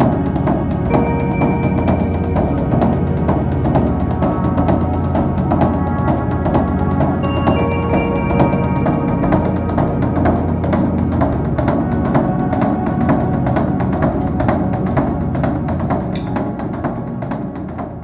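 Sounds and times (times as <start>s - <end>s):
music with sharp percussion: 0.0s - 18.0s.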